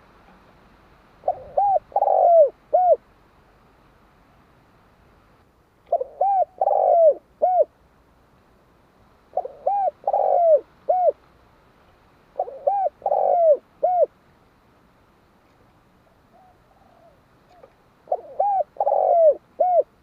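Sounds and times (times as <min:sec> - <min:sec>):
dove cooing: 0:01.2 - 0:03.0, 0:05.9 - 0:07.7, 0:09.3 - 0:11.2, 0:12.4 - 0:14.2, 0:16.0 - 0:20.0.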